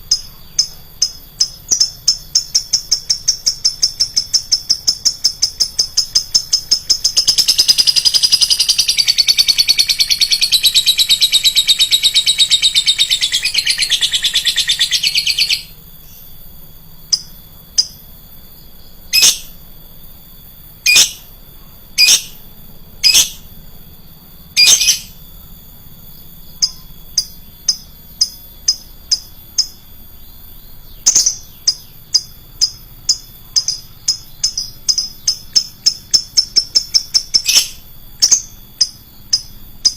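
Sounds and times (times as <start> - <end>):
lovebird chattering: 0.0 - 16.2, 19.1 - 19.6, 20.8 - 21.3, 22.0 - 22.4, 23.0 - 23.4, 24.6 - 25.2, 26.6 - 29.8, 30.6 - 39.9
shrill bird calls: 0.0 - 20.2, 20.8 - 21.4, 22.0 - 23.5, 24.1 - 25.2, 26.0 - 39.9
quick ticking bird notes: 0.1 - 16.3, 26.6 - 39.9.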